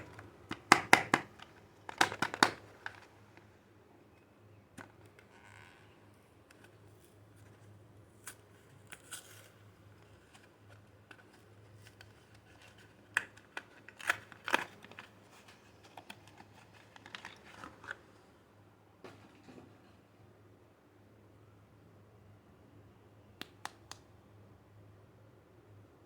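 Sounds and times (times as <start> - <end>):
wrapper crinkling and tearing: 8.2 - 10.6.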